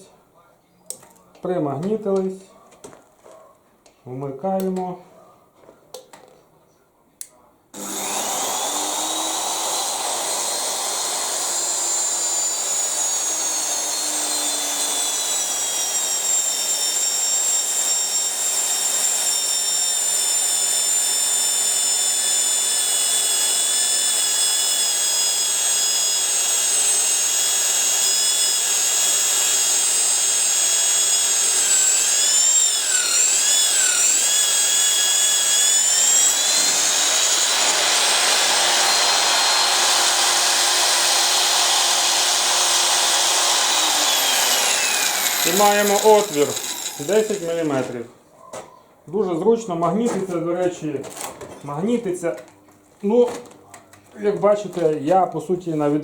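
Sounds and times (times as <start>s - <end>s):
drill motor whining through steel: 7.8s - 48.0s.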